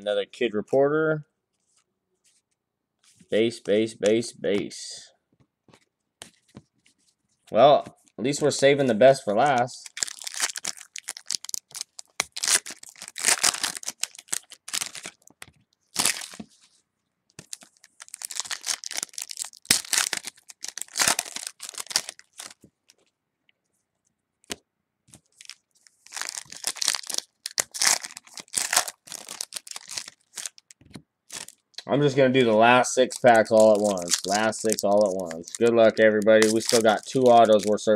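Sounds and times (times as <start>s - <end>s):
card pack wrappers tearing: 9.4s - 16.4s, 17.4s - 22.6s, 25.1s - 31.6s, 33.0s - 37.8s.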